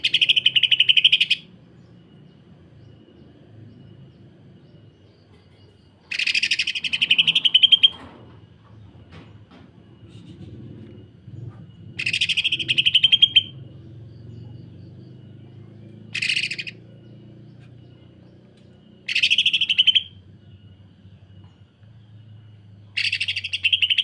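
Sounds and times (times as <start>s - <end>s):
bird rapid rattling calls: 0.0s - 1.5s, 5.6s - 8.1s, 11.4s - 14.5s, 16.0s - 18.2s, 18.8s - 20.2s, 22.9s - 24.0s
faint low hum: 1.4s - 23.6s.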